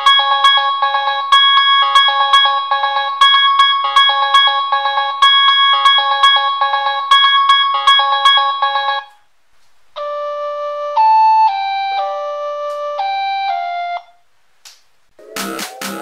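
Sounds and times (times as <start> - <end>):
polyphonic ringtone melody: 0.0 - 9.1
slow ringtone melody: 0.0 - 9.2, 10.0 - 14.2.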